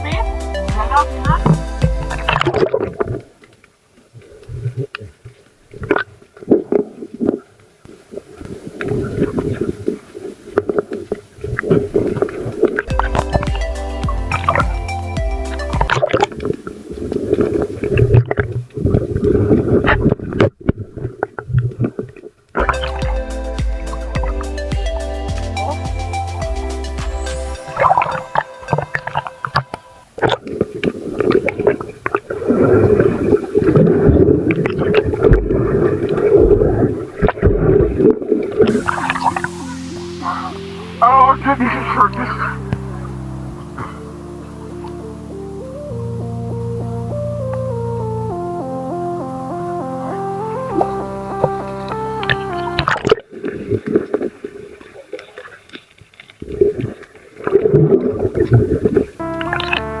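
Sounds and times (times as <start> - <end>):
background music: 0.0 - 2.4, 12.9 - 16.2, 22.7 - 30.0, 38.7 - 53.0, 59.2 - 60.0
muffled water sloshing and bubbling: 0.0 - 25.0, 27.5 - 60.0.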